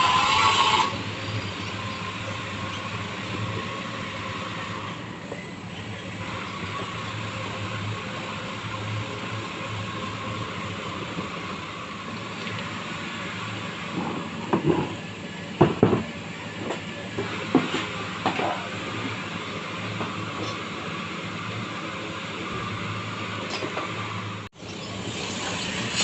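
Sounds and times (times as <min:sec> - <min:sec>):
mechanical hum and hiss: 0:00.0 - 0:26.0
sharp knocks and clatters: 0:15.6 - 0:18.6.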